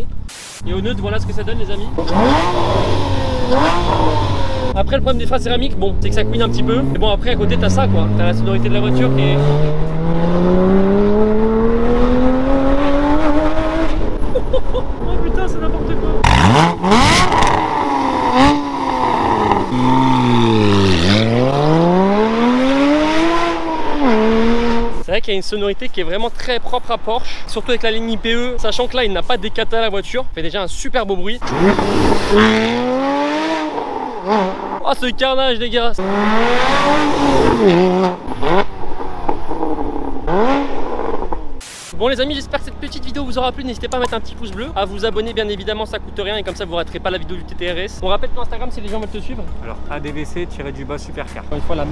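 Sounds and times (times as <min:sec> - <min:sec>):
car engine revving under acceleration: 0:01.0 - 0:14.3, 0:15.7 - 0:25.1, 0:31.4 - 0:34.8, 0:36.0 - 0:41.6.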